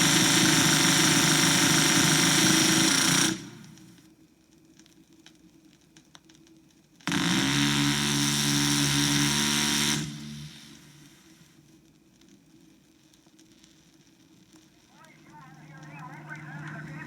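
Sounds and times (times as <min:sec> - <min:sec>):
automatic gunfire burst: 0:00.0 - 0:03.7
faint record crackle: 0:03.8 - 0:07.1, 0:10.9 - 0:17.0.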